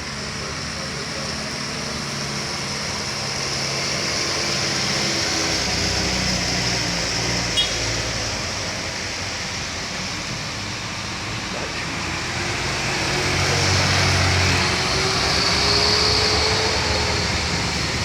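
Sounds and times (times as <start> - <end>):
road noise: 0.0 - 18.0
vehicle engine humming: 0.0 - 18.0.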